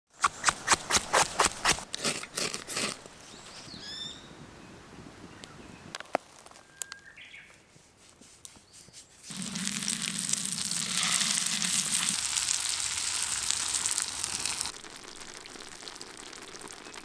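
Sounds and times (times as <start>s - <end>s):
crunching footsteps: 0.1s - 3.7s, 6.0s - 6.8s.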